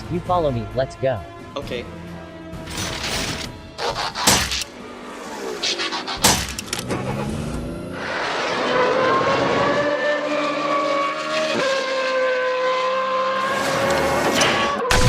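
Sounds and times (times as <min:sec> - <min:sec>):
background music: 0:00.0 - 0:08.0
car engine revving: 0:04.9 - 0:15.0.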